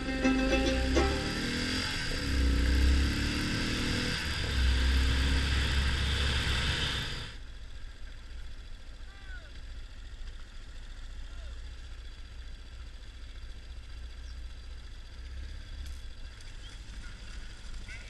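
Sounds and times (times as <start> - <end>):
motorcycle engine revving: 0.0 - 7.5.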